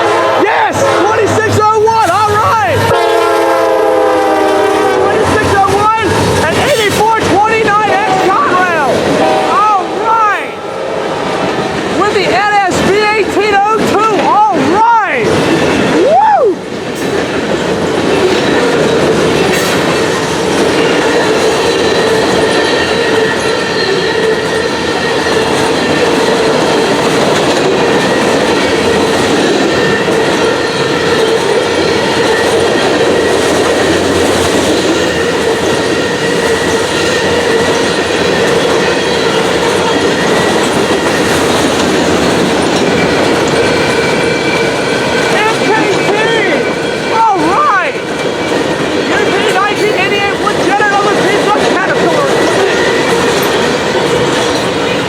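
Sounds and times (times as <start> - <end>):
freight train wheels rumbling: 0.0 - 55.0
high wheel squeal: 18.2 - 27.2, 27.8 - 41.7, 42.4 - 55.0.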